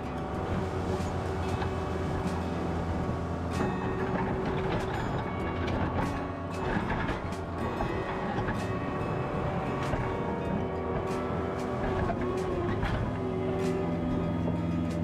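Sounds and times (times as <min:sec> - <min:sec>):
clanks and knocks: 0:03.8 - 0:08.7.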